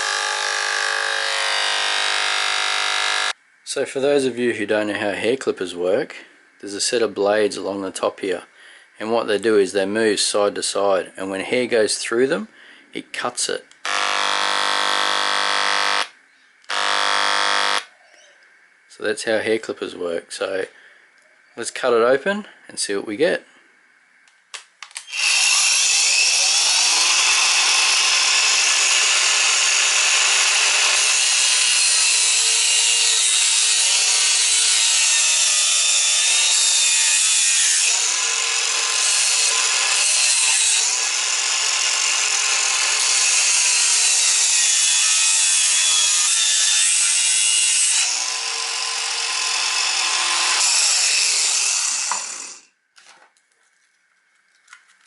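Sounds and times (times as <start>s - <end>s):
angle grinder cutting plastic: 0.0s - 3.4s, 13.8s - 16.1s, 16.7s - 17.9s, 24.8s - 52.7s.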